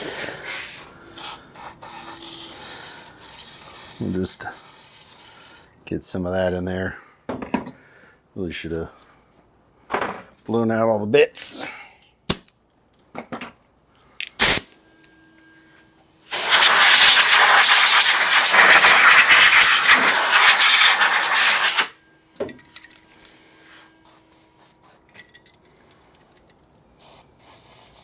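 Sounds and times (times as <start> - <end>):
pressurised spray hissing: 0.0 - 5.6, 16.3 - 22.0.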